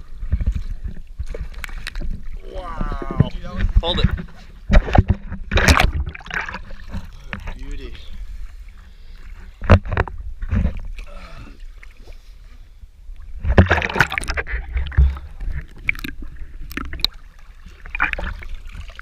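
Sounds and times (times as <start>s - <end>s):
water splashing around boat: 0.0s - 19.0s.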